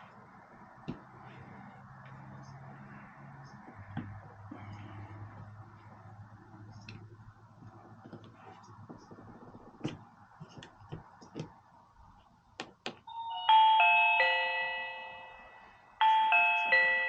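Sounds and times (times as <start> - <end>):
electronic doorbell chime: 13.1 - 17.0.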